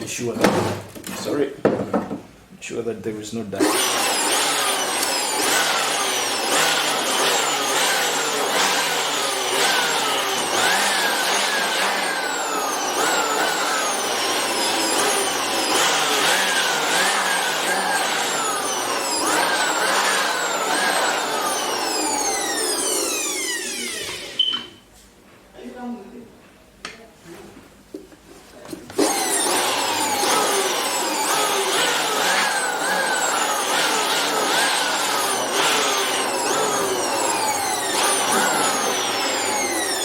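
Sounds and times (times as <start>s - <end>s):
handheld blower motor surging: 3.6s - 24.4s, 28.9s - 40.0s.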